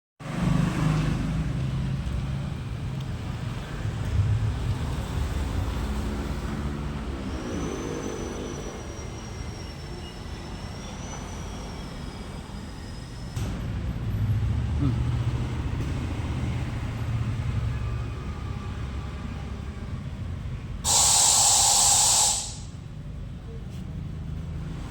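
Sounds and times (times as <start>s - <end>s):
thin high whine: 20.8s - 22.9s
motor humming: 20.9s - 22.8s.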